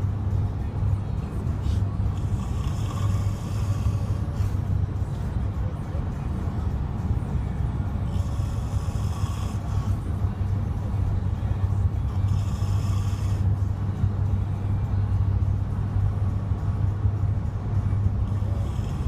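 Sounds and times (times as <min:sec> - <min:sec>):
car low hum: 0:00.0 - 0:19.0
person snoring: 0:02.1 - 0:04.6, 0:08.1 - 0:10.0, 0:12.1 - 0:13.5, 0:18.3 - 0:19.0.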